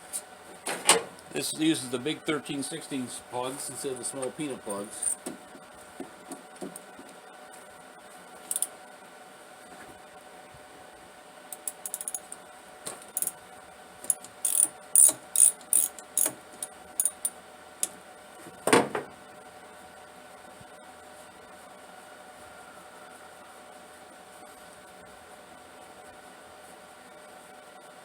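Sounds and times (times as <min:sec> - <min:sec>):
ratchet wrench clicking: 0:08.5 - 0:08.7, 0:11.5 - 0:12.4, 0:13.1 - 0:13.4, 0:14.1 - 0:17.4.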